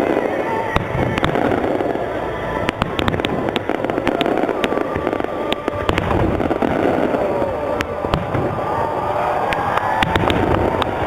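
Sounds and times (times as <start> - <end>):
rumble of bursting shells: 0.0 - 8.8
fireworks bangs and crackles: 0.0 - 11.0.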